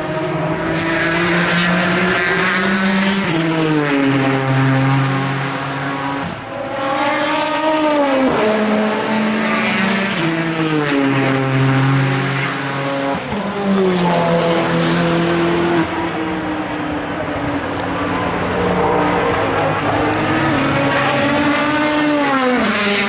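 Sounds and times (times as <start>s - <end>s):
race car engines shifting gears: 0.1s - 23.0s.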